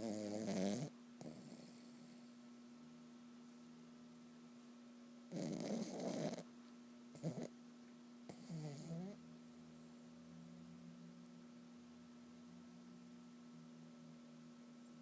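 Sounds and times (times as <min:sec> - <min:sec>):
dog snoring: 0:00.0 - 0:02.3, 0:05.3 - 0:06.5, 0:07.1 - 0:07.5, 0:08.3 - 0:09.2.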